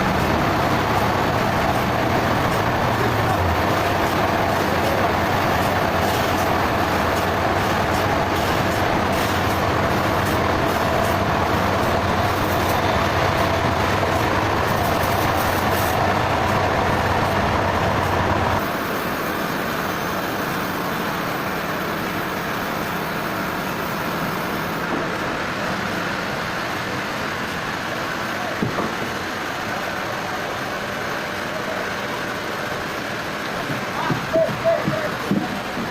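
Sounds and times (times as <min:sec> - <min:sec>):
sawmill machinery running: 0:00.0 - 0:35.9.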